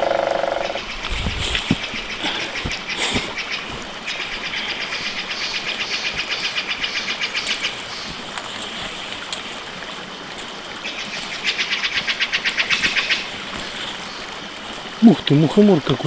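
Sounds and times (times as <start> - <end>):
animal pulsed trill: 0.0 - 0.8.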